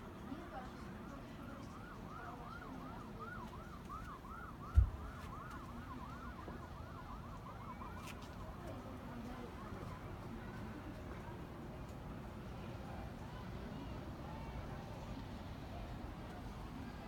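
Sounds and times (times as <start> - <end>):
emergency siren yelping: 1.6 - 8.3
low thump: 4.7 - 5.0.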